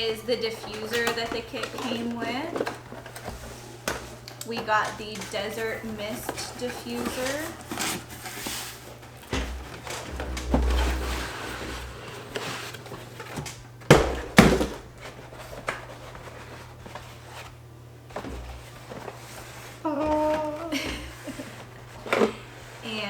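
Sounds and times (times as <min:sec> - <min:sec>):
plastic parts knocking: 0:00.0 - 0:08.3, 0:09.1 - 0:15.8
packaging rustling: 0:00.0 - 0:23.0
low bump: 0:09.3 - 0:12.4.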